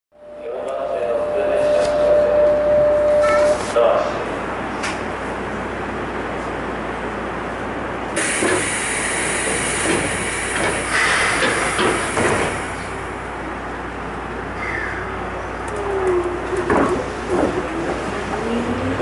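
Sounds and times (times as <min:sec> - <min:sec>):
train low hum: 0:00.1 - 0:19.0
compressed air hiss: 0:08.2 - 0:12.9.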